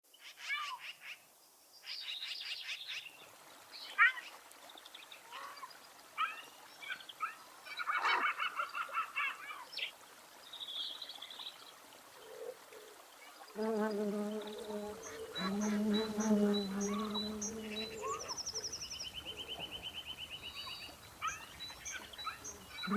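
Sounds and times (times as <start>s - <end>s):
birds chirping and trilling: 13.6s - 22.9s.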